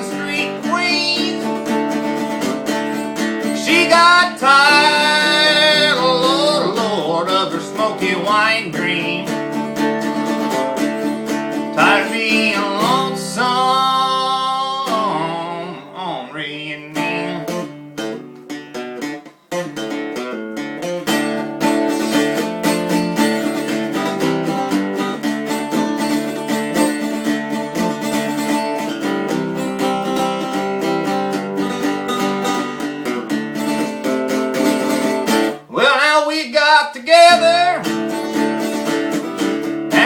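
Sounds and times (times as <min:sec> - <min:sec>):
person singing: 0:00.0 - 0:02.8, 0:03.4 - 0:09.6, 0:11.6 - 0:17.8, 0:21.6 - 0:22.6, 0:35.6 - 0:38.7, 0:39.7 - 0:40.0
guitar strumming chords: 0:00.0 - 0:40.0.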